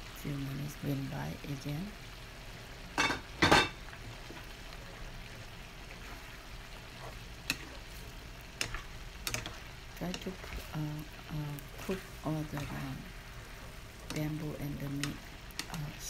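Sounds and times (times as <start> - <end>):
food sizzling in a pan: 0.0 - 16.0
metal clanking on a pan: 3.0 - 3.8, 8.6 - 10.6
scrapes and taps stirring food: 3.8 - 16.0.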